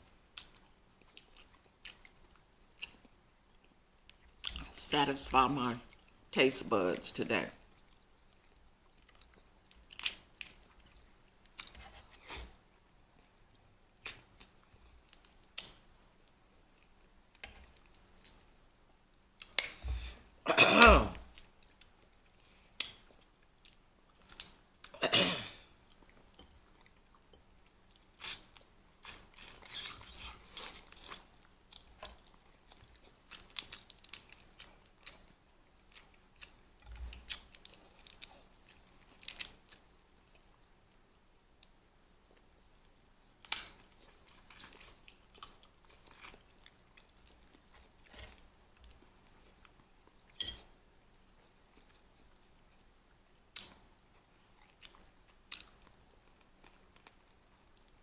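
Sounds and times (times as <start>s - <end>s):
chewing and biting: 25.8s - 40.5s, 43.4s - 50.4s, 53.5s - 57.9s.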